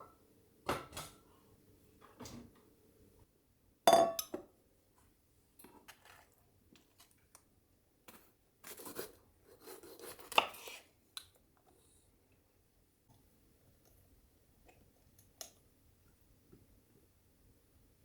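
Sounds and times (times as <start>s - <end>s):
dishes clinking: 3.9s - 4.4s.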